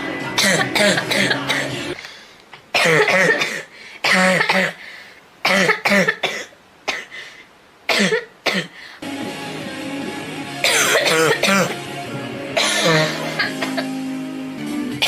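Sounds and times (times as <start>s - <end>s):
girl coughing: 0.4s - 1.8s, 2.8s - 4.8s, 5.5s - 7.1s, 7.9s - 8.8s, 10.6s - 11.8s, 12.6s - 13.9s.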